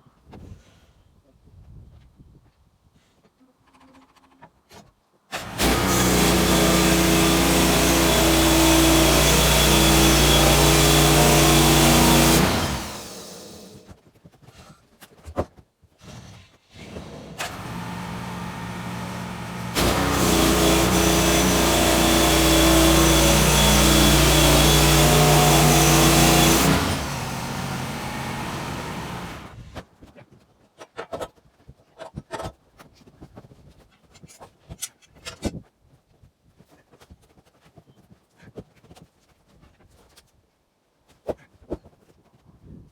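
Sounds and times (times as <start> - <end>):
engine speeding up: 5.4 - 13.8, 17.4 - 29.6.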